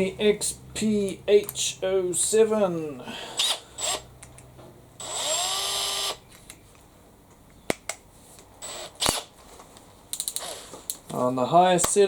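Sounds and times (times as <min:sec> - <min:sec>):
drill motor whining: 0:03.3 - 0:04.1, 0:05.0 - 0:06.2, 0:08.6 - 0:09.3
sharp clicks: 0:10.1 - 0:11.0.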